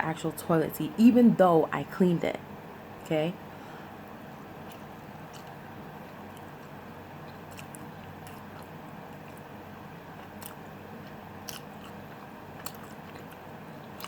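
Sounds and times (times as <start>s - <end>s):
low background hum: 0.0s - 14.0s
person chewing food: 4.6s - 14.0s.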